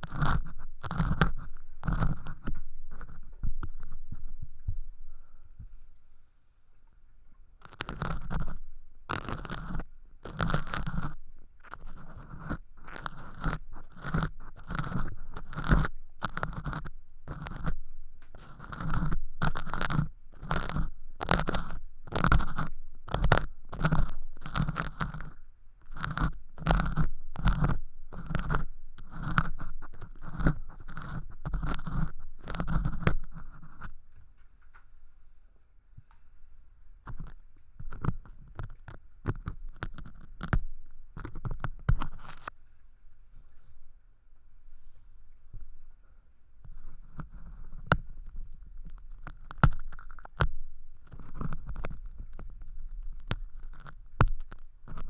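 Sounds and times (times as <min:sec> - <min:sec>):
ear pick scraping and crunching: 0:00.0 - 0:05.5, 0:07.3 - 0:35.1, 0:36.0 - 0:43.9, 0:46.6 - 0:55.0.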